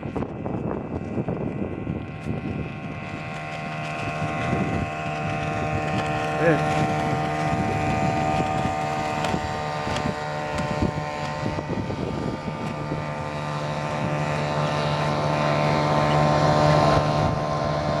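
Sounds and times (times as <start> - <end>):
two-stroke outboard motor running: 0.0 - 18.0.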